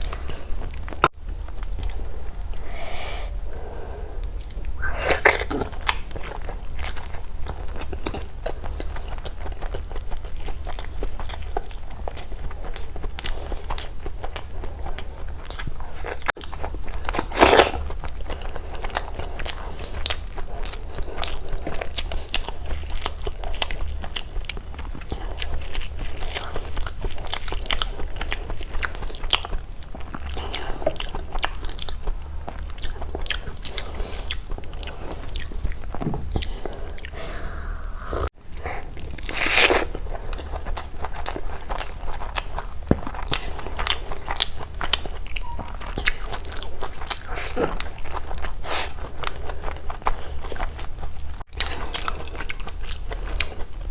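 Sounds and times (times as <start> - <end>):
chewing and biting: 4.2 - 53.9
low steady hum: 17.9 - 46.8
wet mouth clicks: 37.0 - 38.6.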